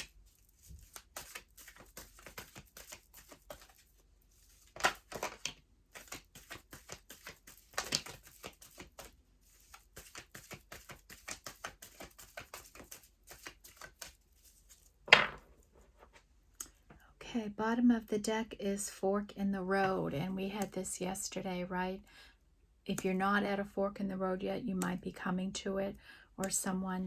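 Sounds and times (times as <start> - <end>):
cards being shuffled: 0.0 - 16.2.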